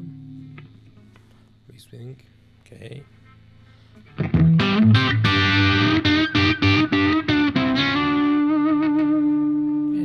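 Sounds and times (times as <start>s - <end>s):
distorted electric guitar: 4.1s - 10.0s.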